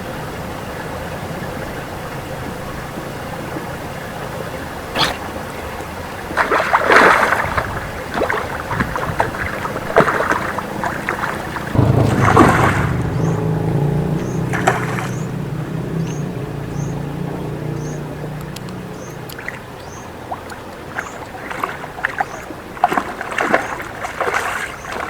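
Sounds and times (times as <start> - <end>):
water splashing: 1.4 - 25.0
low steady hum: 11.2 - 17.6.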